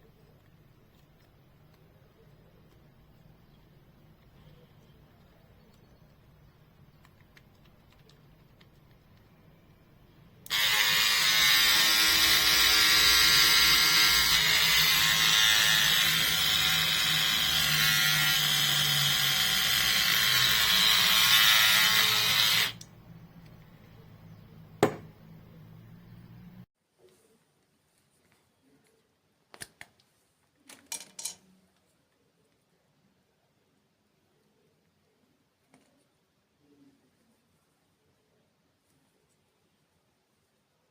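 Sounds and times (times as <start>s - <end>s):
electric hair clipper buzzing: 10.5s - 22.9s.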